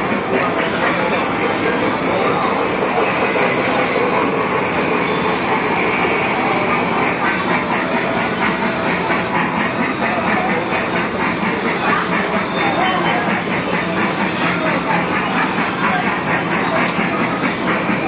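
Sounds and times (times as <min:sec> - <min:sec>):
toy train wheels clattering: 0:00.0 - 0:18.0.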